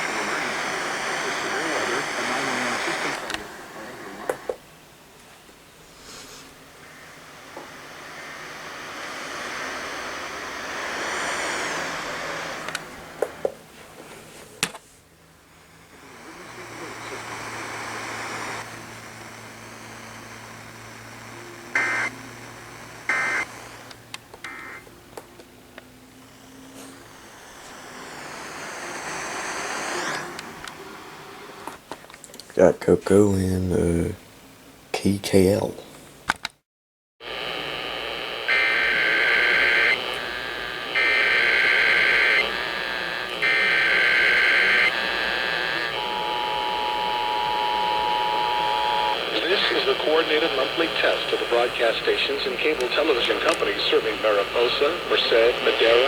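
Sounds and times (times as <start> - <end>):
steady hiss: 0.0 - 15.1, 37.4 - 56.0
data tone bursts: 37.8 - 51.5.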